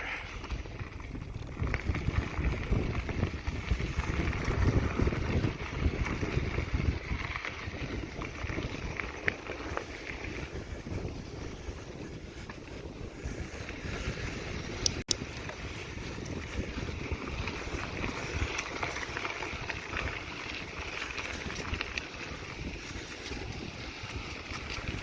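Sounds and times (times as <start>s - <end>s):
bike tires crunching on gravel: 0.0s - 25.0s
wind rumbling on microphone: 0.0s - 25.0s.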